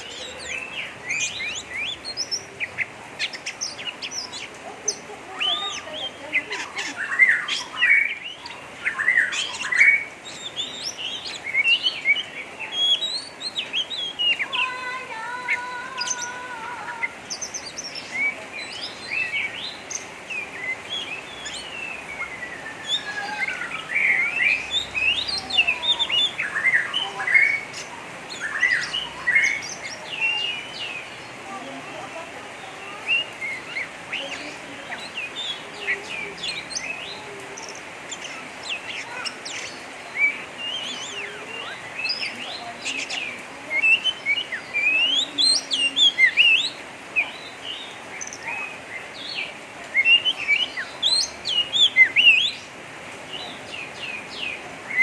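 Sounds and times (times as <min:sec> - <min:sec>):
bird chirping and whistling: 0:20.6 - 0:27.6.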